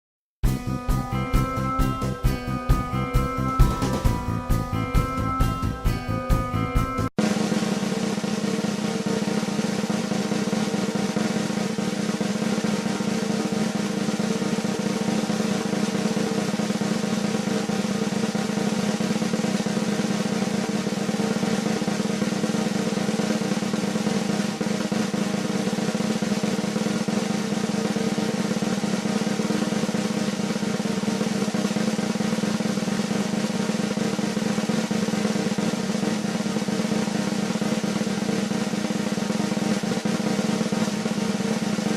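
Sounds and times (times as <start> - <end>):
snare drum roll: 0.4 - 41.9.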